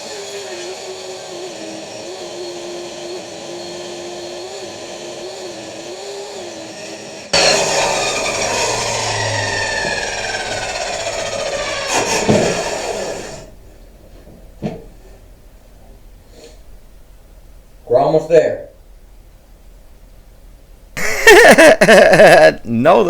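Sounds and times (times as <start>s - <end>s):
power saw cutting wood: 0.0s - 13.9s.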